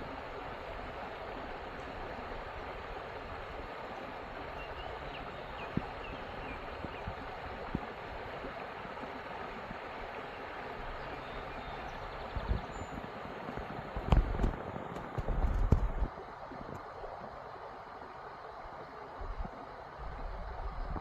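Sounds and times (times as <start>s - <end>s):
creek water gurgling: 0.0s - 21.0s.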